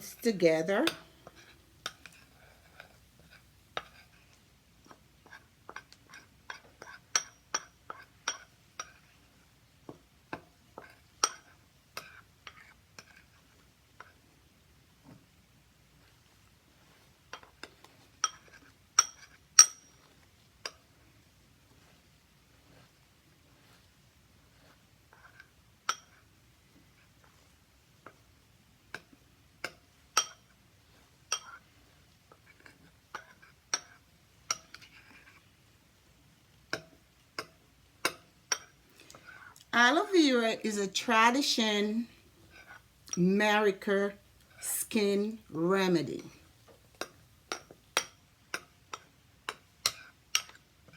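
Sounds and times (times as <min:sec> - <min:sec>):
spoon clinking against bowl: 0:07.2 - 0:07.7, 0:30.2 - 0:30.4.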